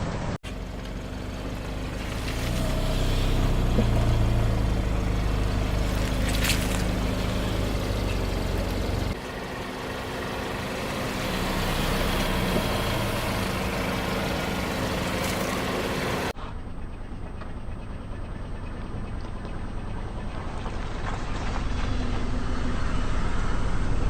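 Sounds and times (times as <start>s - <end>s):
car engine running at low revs: 0.0s - 24.0s.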